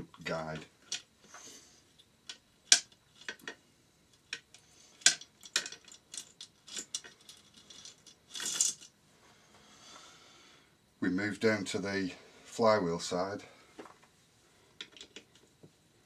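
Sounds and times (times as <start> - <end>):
metal parts clinking: 2.2 - 8.9.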